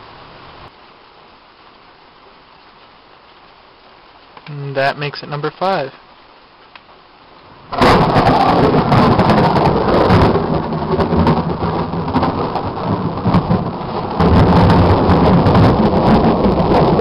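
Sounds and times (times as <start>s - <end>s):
rain: 0.0s - 17.0s
loud thunder rumbling: 7.6s - 17.0s.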